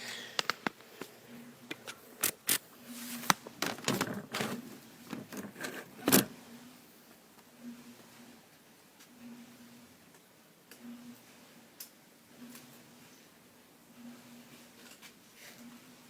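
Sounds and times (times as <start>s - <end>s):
tools clicking and scraping: 1.7s - 2.6s, 3.2s - 6.3s.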